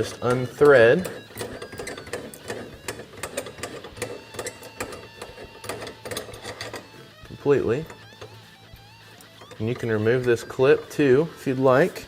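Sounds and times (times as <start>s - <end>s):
small metallic clicks: 0.0s - 7.0s.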